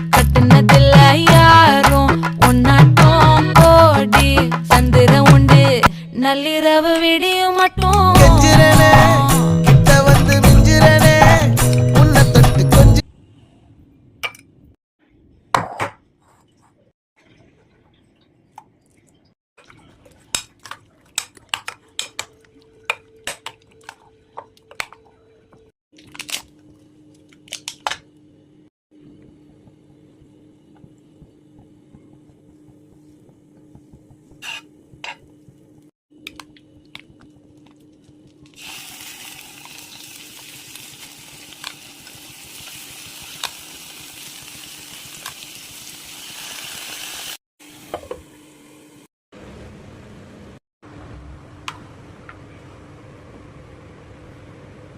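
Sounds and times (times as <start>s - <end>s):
food sizzling in a hot pan: 38.6s - 47.4s.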